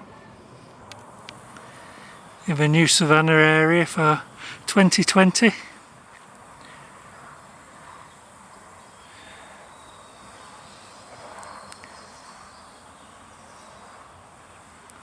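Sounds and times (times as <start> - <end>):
soft steady hiss: 0.0 - 15.0
small sharp ticks: 11.2 - 12.1.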